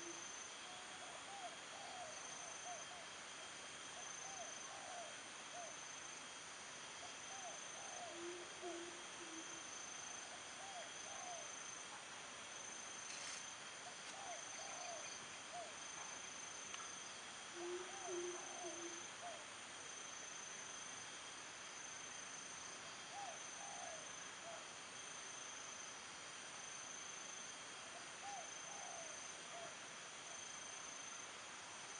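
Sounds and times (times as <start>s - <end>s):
insect high trill: 6.9s - 11.8s, 12.6s - 31.2s
low hooting call: 7.3s - 9.6s, 17.5s - 19.4s.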